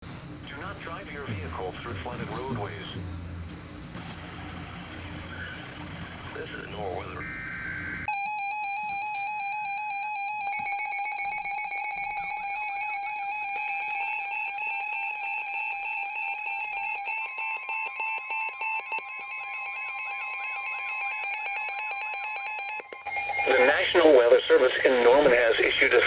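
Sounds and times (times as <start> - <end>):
second steady alarm tone: 0.2 - 25.8
high-pitched electronic alarm tone: 4.5 - 24.3.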